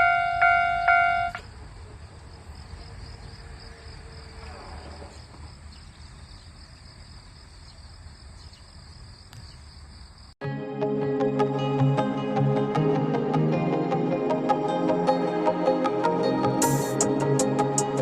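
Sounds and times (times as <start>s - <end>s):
music: 10.4s - 18.0s.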